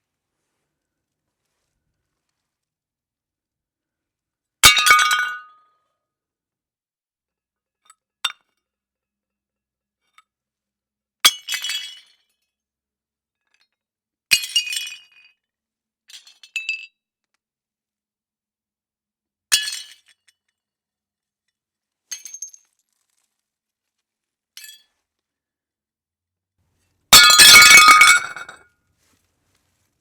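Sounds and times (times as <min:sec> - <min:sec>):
clinks of shards: 0:27.2 - 0:28.6
plates smashing: 0:27.2 - 0:28.6.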